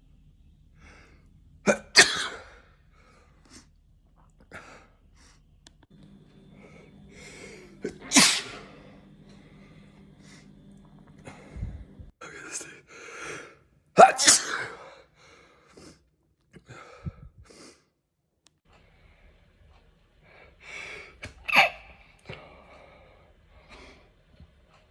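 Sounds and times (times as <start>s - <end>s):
person sneezing: 1.7s - 2.6s, 7.4s - 8.9s, 14.0s - 14.9s, 21.2s - 22.1s.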